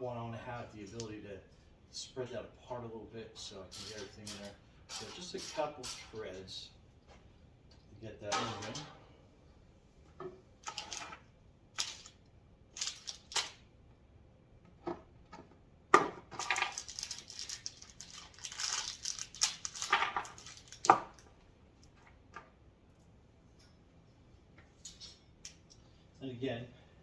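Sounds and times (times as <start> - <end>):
metal rack parts rustling and scraping: 3.4 - 6.6, 8.2 - 9.2, 10.6 - 13.6, 16.3 - 22.2, 24.7 - 26.1.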